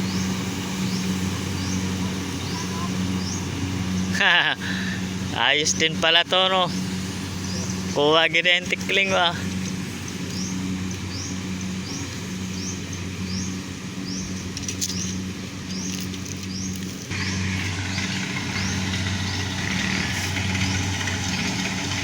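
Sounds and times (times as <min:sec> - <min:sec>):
high rising chirp: 0:00.0 - 0:04.3, 0:10.3 - 0:22.0
engine running: 0:00.0 - 0:22.0
loud hiss: 0:00.0 - 0:22.0.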